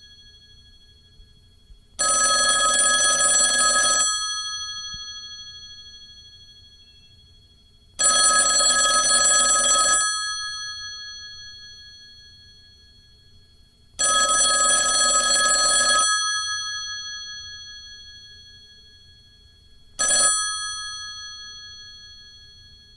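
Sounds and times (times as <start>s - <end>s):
telephone bell ringing: 2.0s - 6.5s, 8.0s - 12.2s, 14.0s - 18.7s, 20.0s - 22.9s.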